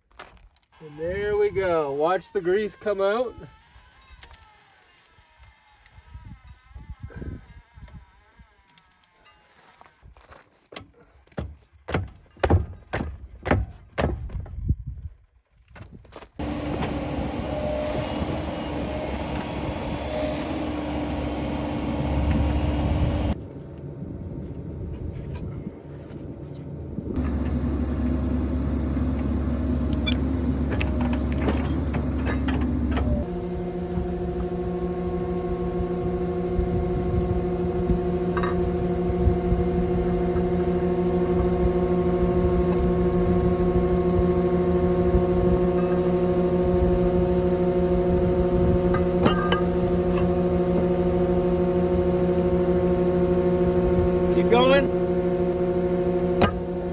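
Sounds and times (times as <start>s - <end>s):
skid steer engine running: 16.4s - 25.3s, 25.9s - 56.9s.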